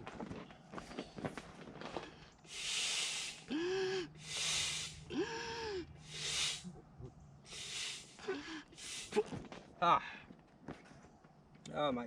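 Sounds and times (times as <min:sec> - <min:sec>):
hand pump hissing air: 0:02.5 - 0:03.5, 0:04.2 - 0:05.0, 0:06.0 - 0:06.7, 0:07.5 - 0:08.2, 0:08.8 - 0:09.2.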